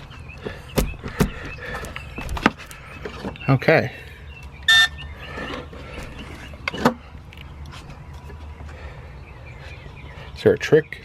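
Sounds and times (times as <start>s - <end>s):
door lock beep: 4.7s - 5.0s.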